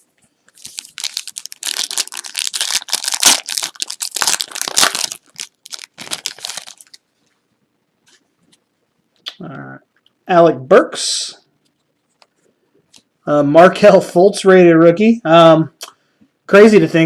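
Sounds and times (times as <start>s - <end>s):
wrapper crinkling and tearing: 0.5s - 7.0s.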